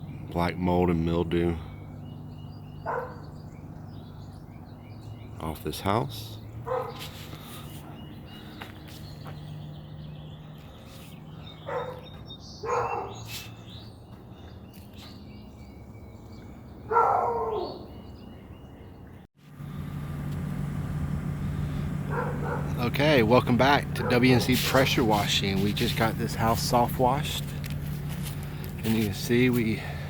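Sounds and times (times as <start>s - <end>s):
dog barking: 2.8s - 3.3s, 6.6s - 7.1s, 11.6s - 13.3s, 16.9s - 17.9s, 22.1s - 22.8s, 24.0s - 24.5s
louder steady hum: 19.4s - 30.0s
steady low hum: 19.5s - 30.0s.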